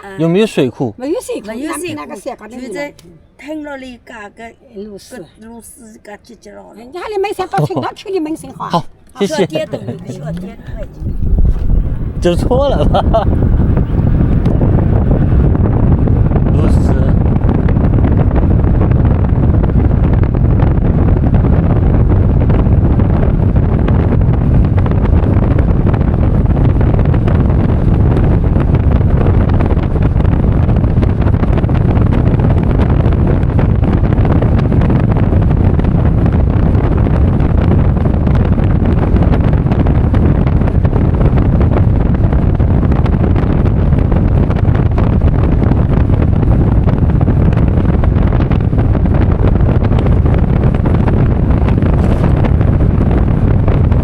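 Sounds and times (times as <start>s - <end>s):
vehicle road noise: 0.0s - 54.0s
wind buffeting microphone: 0.0s - 54.0s.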